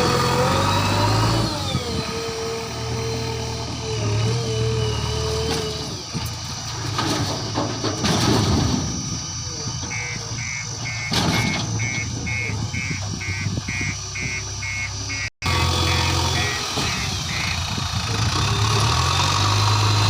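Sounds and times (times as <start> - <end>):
heavy diesel engine running: 0.0 - 20.0
reversing alarm beeping: 9.1 - 17.7.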